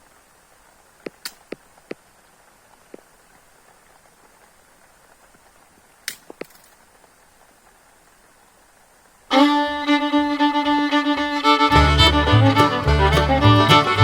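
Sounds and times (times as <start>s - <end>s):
sharp clicks: 1.0s - 2.0s
bluegrass fiddle tune: 9.3s - 14.0s
bass line: 10.4s - 14.0s.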